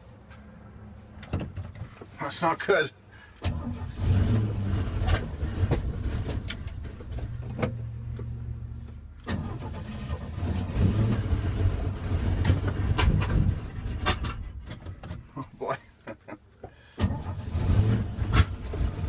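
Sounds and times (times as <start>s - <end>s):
sharp knocks and clunks: 1.2s - 2.1s.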